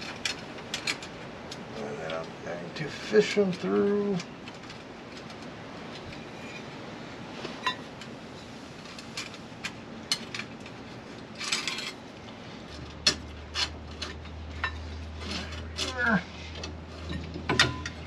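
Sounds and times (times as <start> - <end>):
low steady hum: 0.0 - 18.0
rustling scrape: 10.7 - 17.4.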